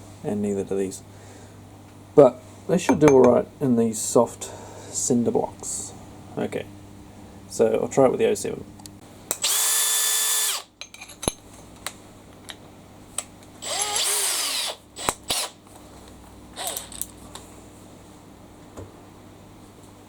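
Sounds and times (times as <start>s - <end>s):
cordless drill motor whine: 9.4s - 10.7s, 13.6s - 15.5s, 16.6s - 17.0s.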